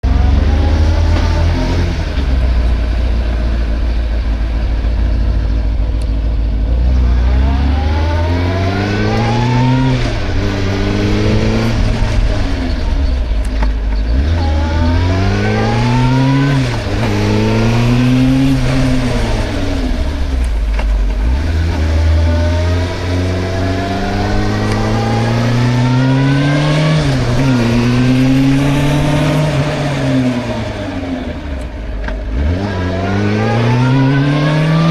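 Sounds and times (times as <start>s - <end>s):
motorcycle accelerating through gears: 0.0s - 34.9s
motorcycle engine idling: 2.1s - 6.8s.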